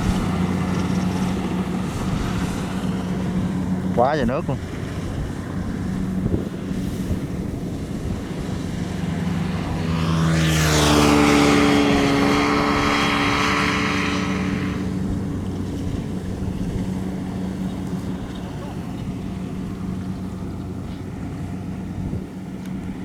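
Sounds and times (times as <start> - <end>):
combine harvester diesel engine: 0.0 - 23.0.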